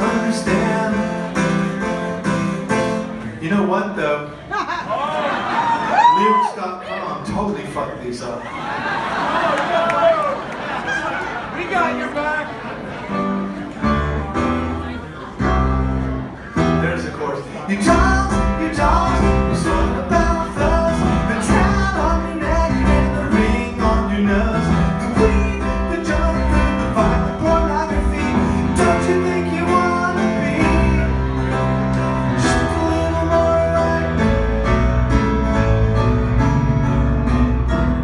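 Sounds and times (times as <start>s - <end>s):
live band playing: 17.8s - 38.0s.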